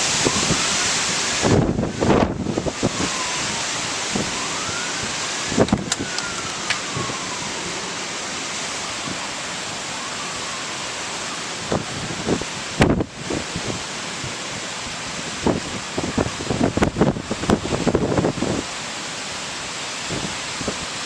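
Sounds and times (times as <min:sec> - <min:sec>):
siren wailing: 0:00.0 - 0:13.8, 0:15.0 - 0:18.7
wind gusts on microphone: 0:00.0 - 0:18.8, 0:19.6 - 0:21.0
heavy rain hissing: 0:00.0 - 0:21.0.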